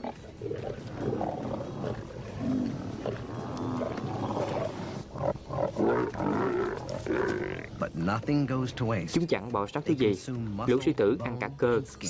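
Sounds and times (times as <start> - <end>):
lions growling and snarling: 0.0 - 8.0.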